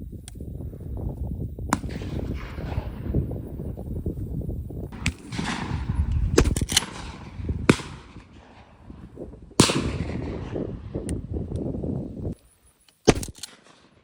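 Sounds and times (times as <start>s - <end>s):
steady low rumble: 0.0s - 12.4s
shotgun shots: 1.7s - 3.4s, 4.9s - 11.0s, 13.0s - 14.0s.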